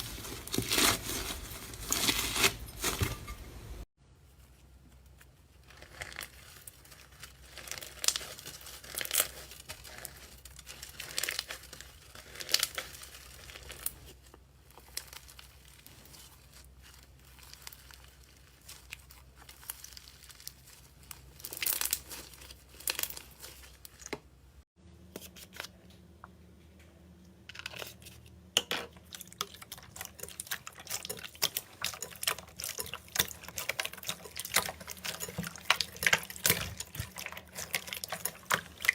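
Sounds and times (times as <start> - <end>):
slime squelching by hand: 5.4 - 24.2, 28.9 - 38.9.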